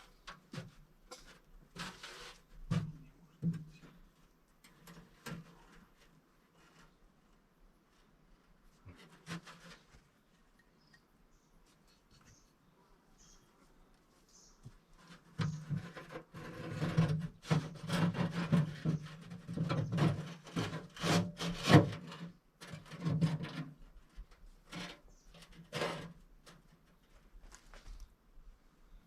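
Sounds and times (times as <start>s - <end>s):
scraping and rubbing strokes: 0.0s - 3.0s, 7.8s - 10.4s.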